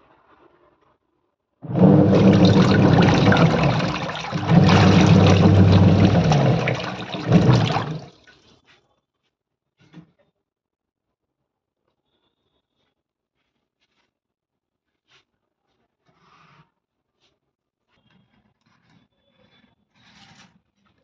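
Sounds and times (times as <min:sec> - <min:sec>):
churning water: 0:01.6 - 0:08.1
washing machine motor hum: 0:01.6 - 0:08.1.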